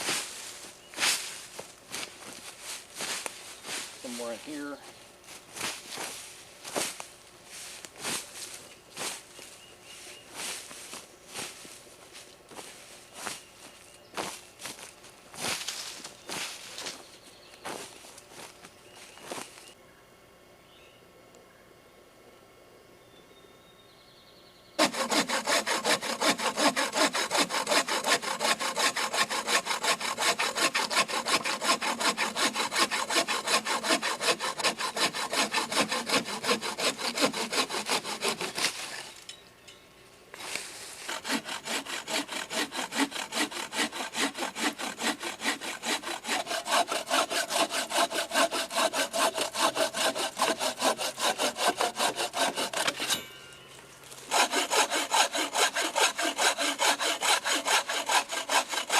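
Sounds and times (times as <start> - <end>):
hand saw cutting wood: 24.8 - 39.1, 40.4 - 53.3, 54.3 - 58.9.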